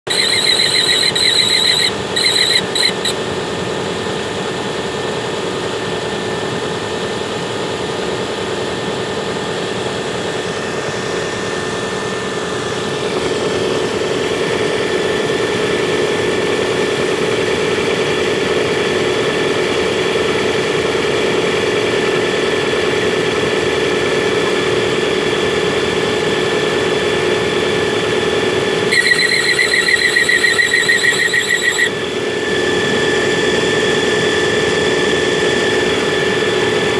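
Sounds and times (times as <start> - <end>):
high-pitched pulsing squeal: 0.0 - 3.2, 28.9 - 31.9.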